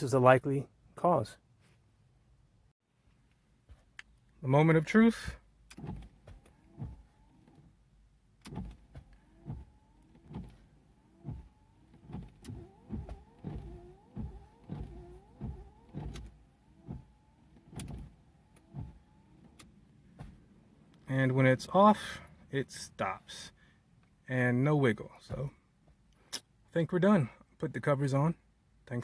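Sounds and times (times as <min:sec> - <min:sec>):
wiper motor whirring: 0:05.8 - 0:07.7, 0:08.4 - 0:20.7
windshield wiper knocking: 0:11.2 - 0:17.1.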